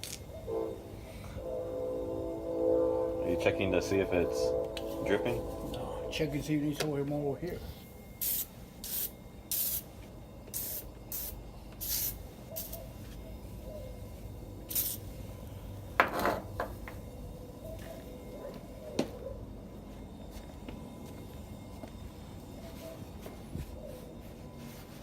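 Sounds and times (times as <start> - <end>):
spray hissing bursts: 8.2 - 9.9, 10.5 - 12.8, 14.7 - 15.1.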